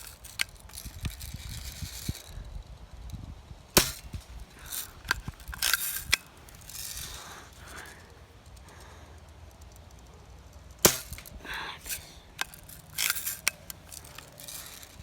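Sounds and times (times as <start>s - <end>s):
small clicks and rattles: 0.0s - 3.2s, 3.8s - 15.0s
bb gun firing: 3.8s - 7.4s, 10.8s - 15.0s.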